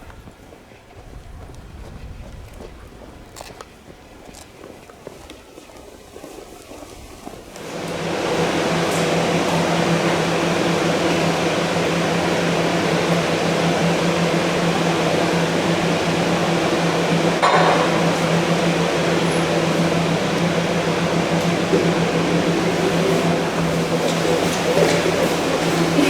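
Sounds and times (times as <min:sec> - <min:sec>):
mechanical droning hum: 0:07.6 - 0:26.0.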